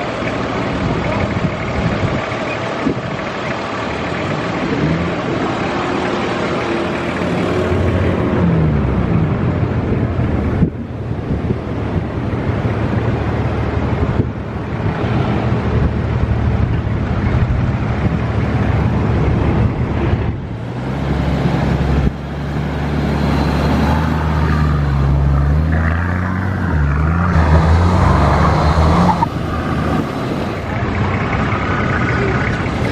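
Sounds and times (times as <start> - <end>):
engine running: 0.0 - 32.9
wind noise on microphone: 0.8 - 3.3, 9.1 - 20.7.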